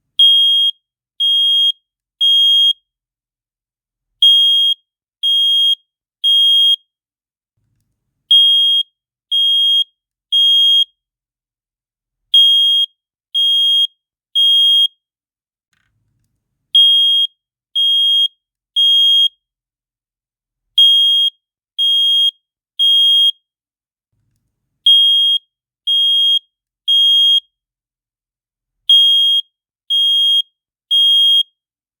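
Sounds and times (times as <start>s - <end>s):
fire alarm beeping: 0.2s - 2.8s, 4.2s - 6.8s, 8.3s - 10.9s, 12.4s - 14.9s, 16.8s - 19.3s, 20.8s - 23.4s, 24.9s - 27.4s, 28.9s - 31.5s.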